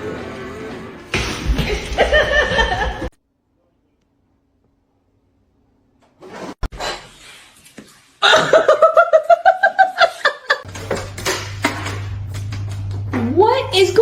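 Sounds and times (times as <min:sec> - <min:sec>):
person laughing hard: 0:01.5 - 0:03.1, 0:08.2 - 0:10.6.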